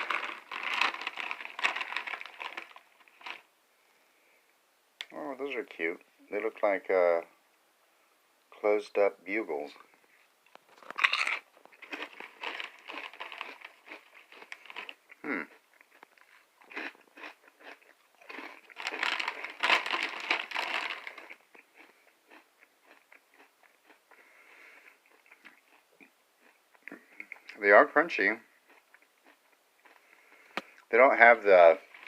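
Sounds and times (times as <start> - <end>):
crunching snacks: 0.0 - 3.5, 10.5 - 27.6, 28.7 - 32.0.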